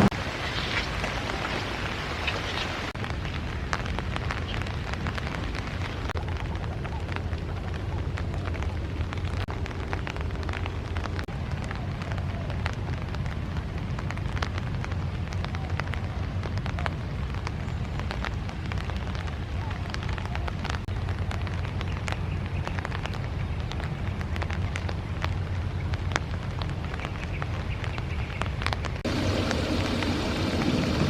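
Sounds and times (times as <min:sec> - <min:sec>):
rain falling: 0:00.0 - 0:31.0
low rumble: 0:28.9 - 0:31.0.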